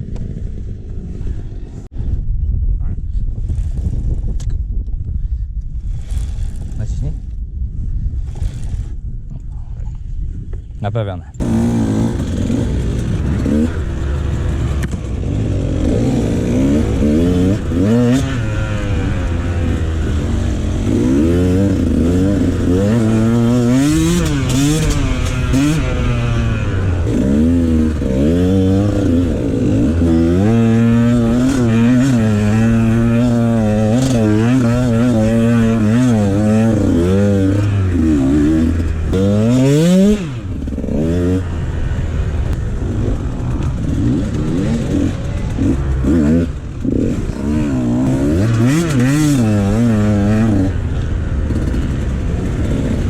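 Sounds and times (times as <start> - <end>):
dirt bike engine revving: 11.4 - 53.0.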